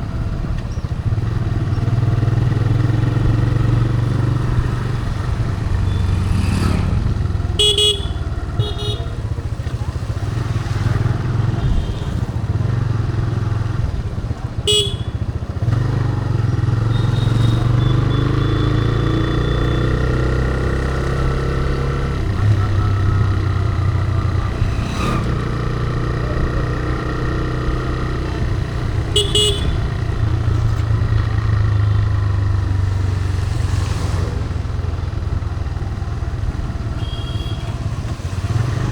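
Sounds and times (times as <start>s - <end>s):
motorcycle engine running: 0.0s - 33.8s, 34.4s - 38.9s
short horn beeps: 29.2s - 30.0s, 37.0s - 37.8s.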